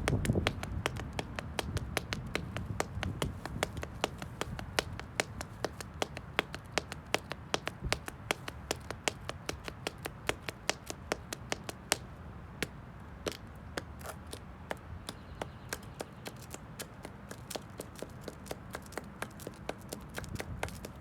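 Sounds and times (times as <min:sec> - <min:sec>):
high heels tapping on concrete: 0:00.0 - 0:21.0.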